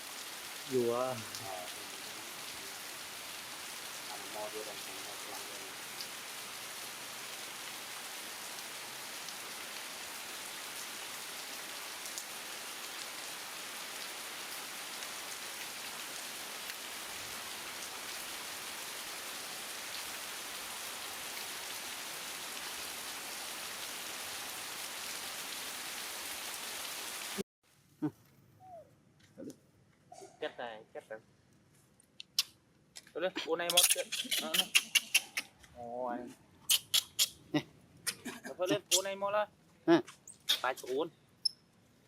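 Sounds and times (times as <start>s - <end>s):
heavy rain: 0.0s - 27.4s.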